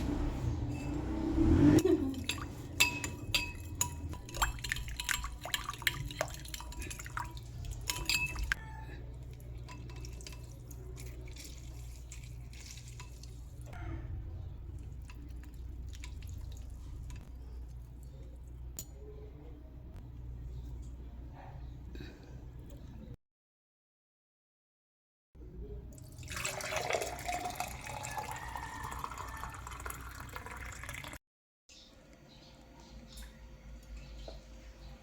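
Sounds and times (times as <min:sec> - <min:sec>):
glassware clinking: 0:01.9 - 0:08.6.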